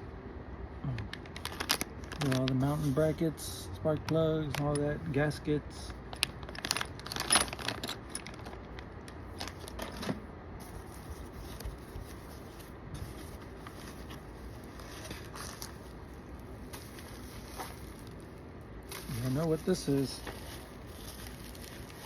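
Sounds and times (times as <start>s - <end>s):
plastic packaging crinkling: 1.3s - 3.0s, 10.8s - 22.0s.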